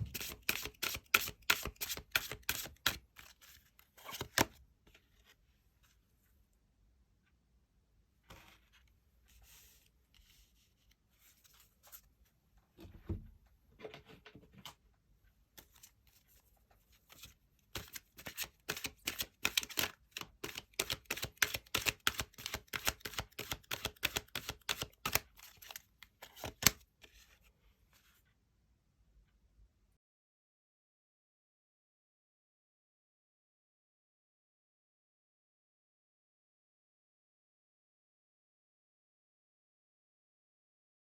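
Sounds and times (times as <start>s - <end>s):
cards sliding and rustling: 0.0s - 6.0s, 8.3s - 12.1s, 15.6s - 28.1s.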